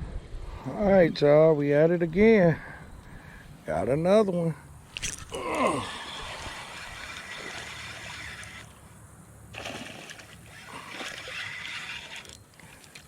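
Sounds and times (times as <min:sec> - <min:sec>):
water splashing and sloshing: 0:04.9 - 0:13.0.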